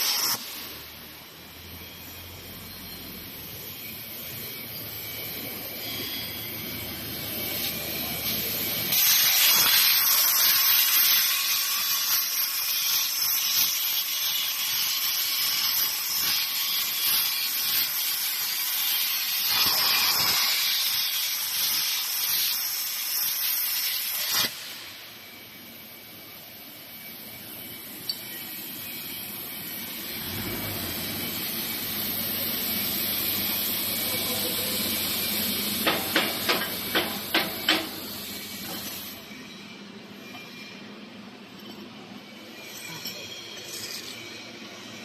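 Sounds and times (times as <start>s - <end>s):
cutting machine hissing: 27.3s - 39.3s.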